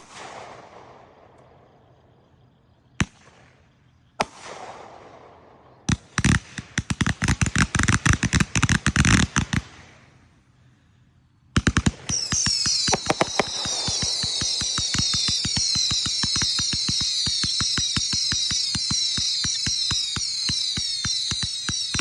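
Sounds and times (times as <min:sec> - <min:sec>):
crackling firework shots: 0:00.0 - 0:10.5, 0:11.3 - 0:22.0
firework reports: 0:11.6 - 0:22.0
high firework whistle: 0:12.0 - 0:22.0.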